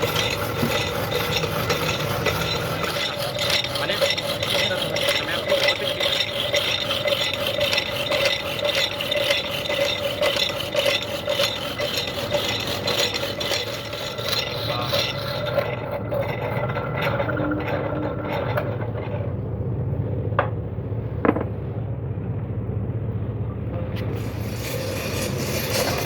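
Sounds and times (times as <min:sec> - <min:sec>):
metal scraping strokes: 0:00.0 - 0:19.4, 0:24.0 - 0:26.0
steady machine hum: 0:00.0 - 0:26.0.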